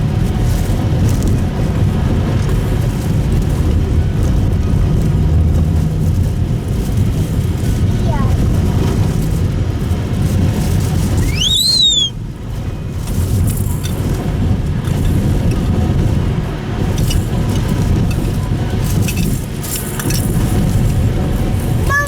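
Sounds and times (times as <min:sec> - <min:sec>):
car tyres and engine rumble: 0:00.0 - 0:22.0
high squeak: 0:11.2 - 0:12.1.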